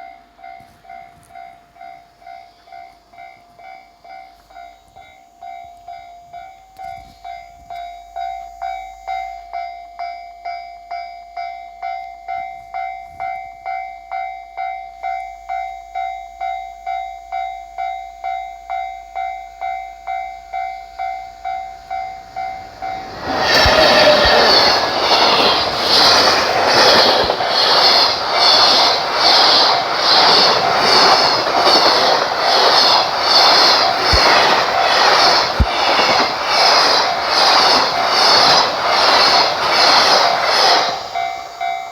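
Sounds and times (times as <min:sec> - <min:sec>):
train wheels clattering: 0:22.2 - 0:41.9
level crossing warning bell: 0:36.4 - 0:41.9.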